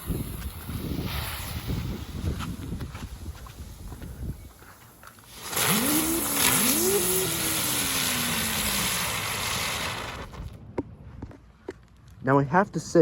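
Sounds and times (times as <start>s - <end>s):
hiss of spraying sparks: 0.0s - 4.0s, 5.0s - 10.5s
spinning firework humming tones: 5.2s - 10.6s.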